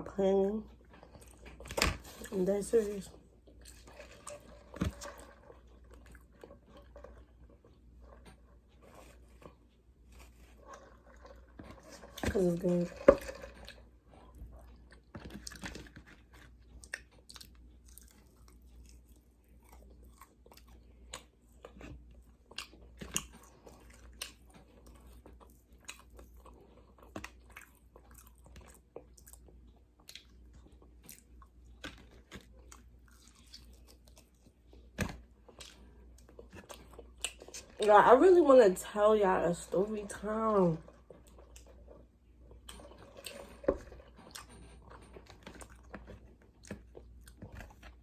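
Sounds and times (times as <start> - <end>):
person chewing and crunching food: 0.3 - 39.0, 39.7 - 48.0.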